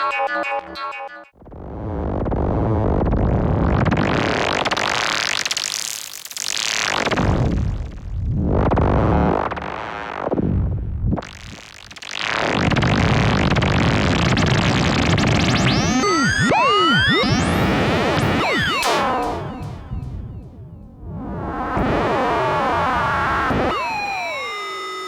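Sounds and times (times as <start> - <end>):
gritty synth noise: 6.4 - 25.0
modular synthesizer experimental sounds: 8.5 - 25.0.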